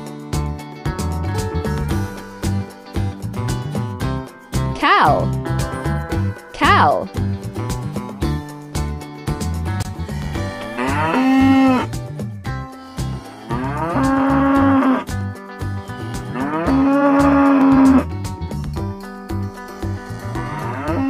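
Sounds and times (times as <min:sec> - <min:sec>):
background music: 0:00.0 - 0:21.0
cow mooing: 0:10.0 - 0:12.0, 0:12.8 - 0:15.1, 0:15.8 - 0:18.1, 0:19.7 - 0:21.0.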